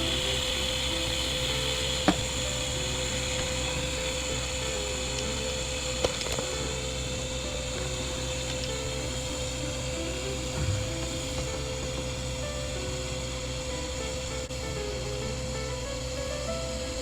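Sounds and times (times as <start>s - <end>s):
gas torch flame hissing: 0.0s - 17.0s.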